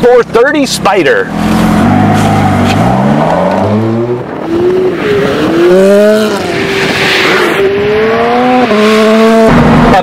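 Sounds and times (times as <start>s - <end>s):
car engine accelerating hard: 0.2s - 10.0s.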